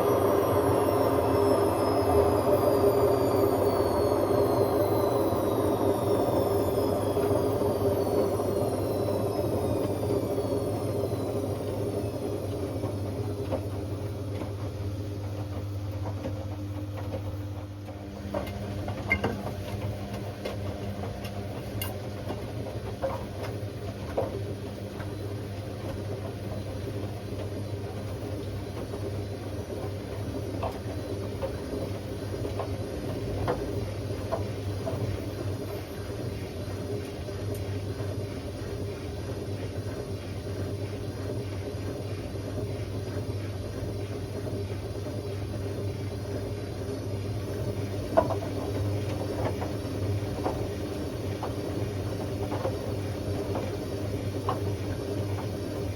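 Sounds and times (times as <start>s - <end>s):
washing machine motor whine: 0.0s - 55.9s.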